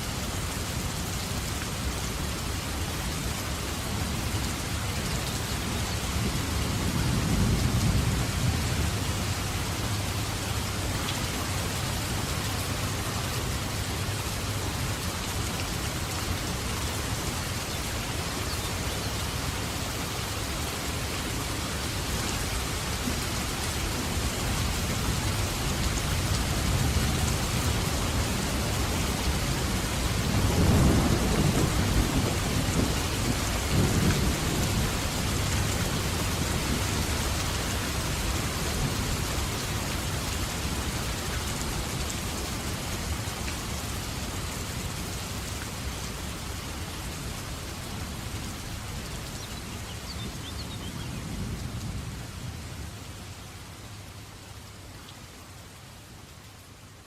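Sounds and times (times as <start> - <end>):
heavy rain: 0.0 - 57.0
thunder rumbling: 29.3 - 37.2.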